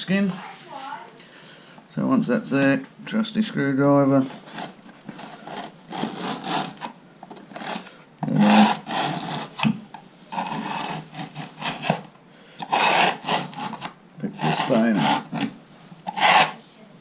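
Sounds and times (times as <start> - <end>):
screwdriver scraping: 4.2 - 9.7, 10.3 - 16.6.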